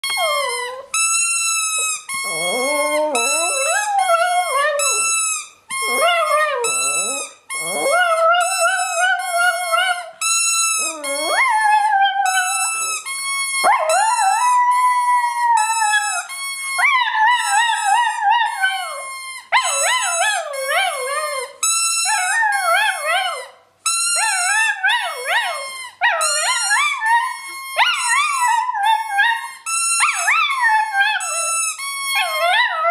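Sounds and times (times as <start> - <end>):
dog howling: 2.2 - 5.1, 5.8 - 10.2, 10.8 - 13.0, 13.6 - 16.3.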